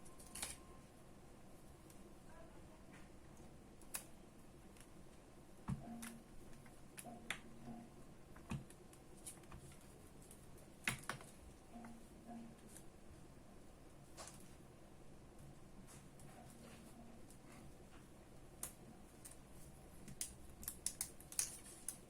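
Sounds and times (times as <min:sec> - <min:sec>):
small hard objects clicking: 0:20.0 - 0:22.0.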